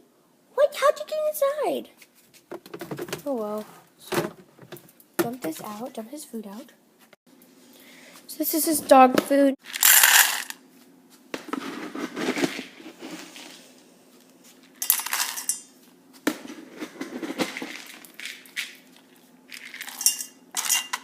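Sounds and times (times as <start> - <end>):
dry kibble rattling into bowl: 9.6 - 10.6, 14.7 - 15.6, 17.3 - 21.0.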